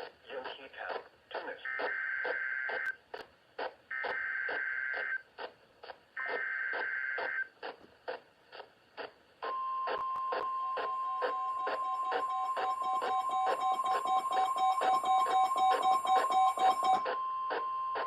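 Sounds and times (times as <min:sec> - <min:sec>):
steady warning alarm tone: 0:09.4 - 0:18.0
buzzy digital data tones: 0:09.8 - 0:18.0.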